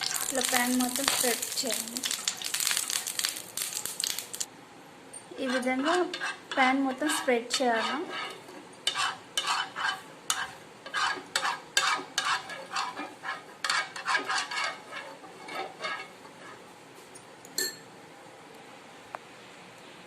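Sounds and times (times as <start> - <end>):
utensil scraping frying pan: 0.0 - 4.5, 5.4 - 16.7.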